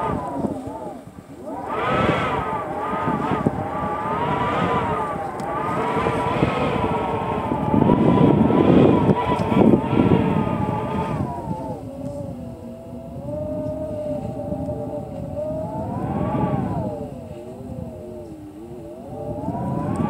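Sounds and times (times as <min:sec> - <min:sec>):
gusty rushing wind: 0:00.0 - 0:20.0
wind howling: 0:00.0 - 0:20.0.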